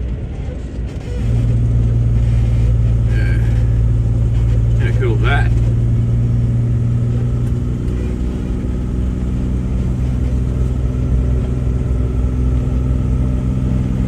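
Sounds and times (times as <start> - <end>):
truck engine droning: 0.9 - 14.0.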